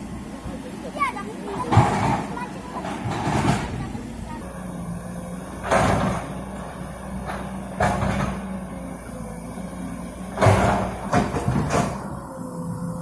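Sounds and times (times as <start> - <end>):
engine humming: 0.0 - 13.0
loud knocks and clunks: 1.6 - 4.1, 5.6 - 8.7, 10.2 - 12.2.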